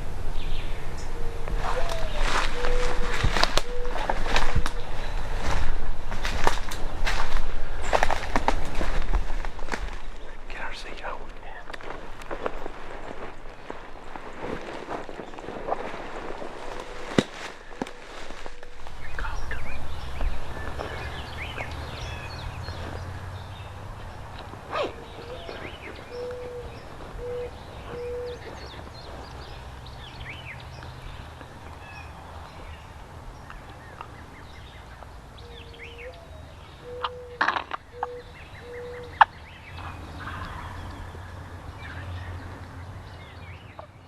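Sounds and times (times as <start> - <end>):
wind on microphone: 0.0 - 10.7
songbirds chirping and singing: 0.0 - 44.0
cooing bird call: 0.8 - 5.6, 24.1 - 29.4, 35.4 - 42.6.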